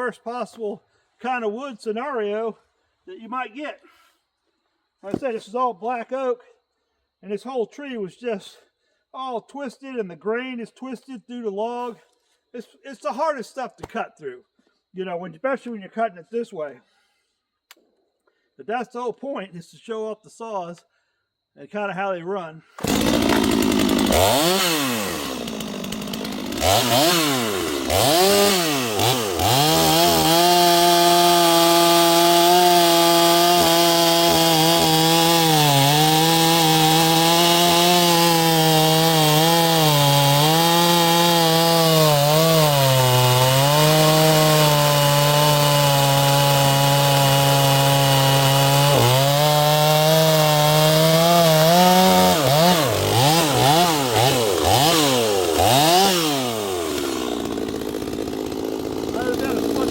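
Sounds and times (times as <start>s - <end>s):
chainsaw cutting log: 5.0s - 5.4s, 22.8s - 59.9s
chainsaw revving: 22.8s - 59.9s.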